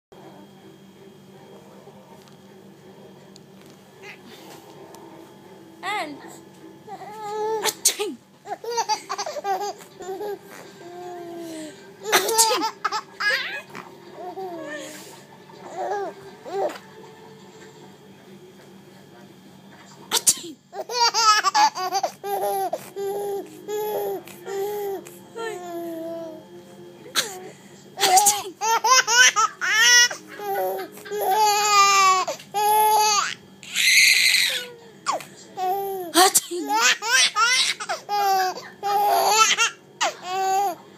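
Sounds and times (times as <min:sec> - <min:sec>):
fake sneeze: 0:07.6 - 0:08.2
baby laughing: 0:08.5 - 0:11.3, 0:12.0 - 0:14.9, 0:20.8 - 0:26.2, 0:28.0 - 0:40.8.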